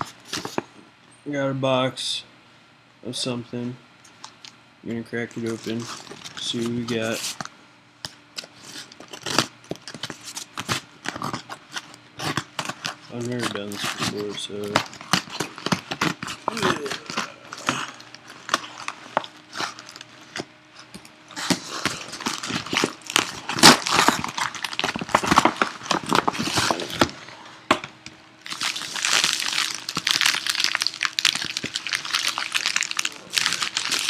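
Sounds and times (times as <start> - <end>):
plastic wrapping crinkling: 5.2 - 7.5, 8.4 - 27.2, 28.4 - 34.0.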